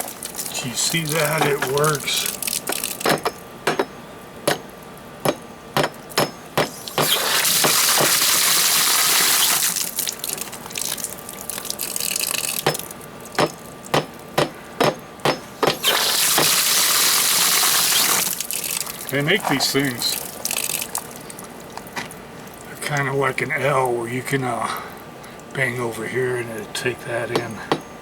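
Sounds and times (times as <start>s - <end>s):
water gushing from hose spigot: 0.0s - 3.2s, 6.6s - 14.4s, 15.6s - 26.0s.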